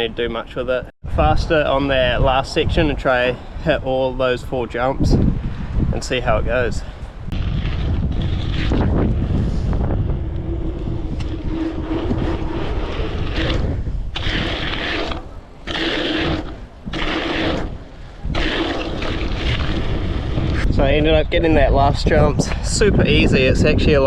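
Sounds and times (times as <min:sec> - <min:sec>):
wind buffeting microphone: 0:00.7 - 0:24.0
bike tyres rumbling on dirt: 0:07.3 - 0:21.1.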